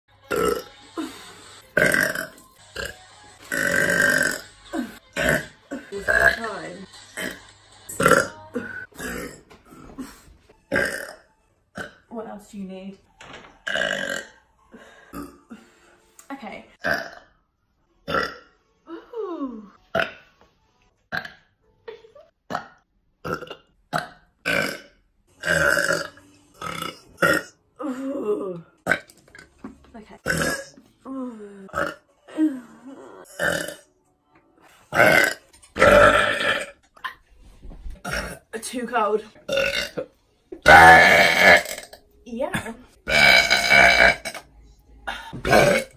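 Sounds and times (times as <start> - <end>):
young women burping: 0.3 - 1.1, 1.8 - 10.0, 10.7 - 11.2, 13.6 - 15.7, 16.8 - 17.3, 18.0 - 20.2, 22.5 - 29.4, 30.2 - 33.9, 34.9 - 37.2, 39.5 - 44.4, 45.0 - 45.9.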